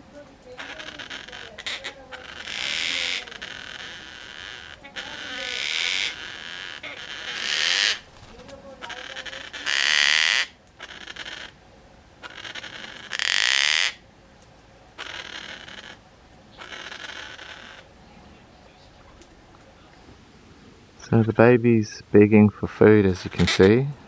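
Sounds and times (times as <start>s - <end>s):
cockatoo rasping begging calls: 0.6s - 8.5s, 15.0s - 18.0s.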